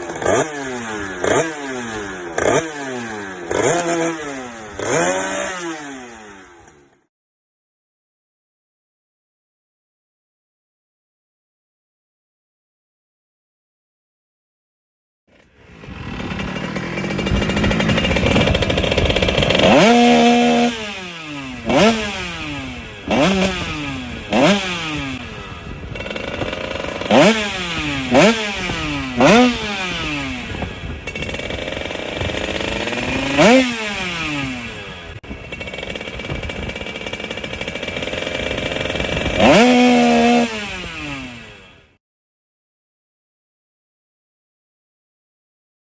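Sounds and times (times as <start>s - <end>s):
two-stroke motorcycle engine revving: 0.0s - 7.1s, 15.3s - 42.0s.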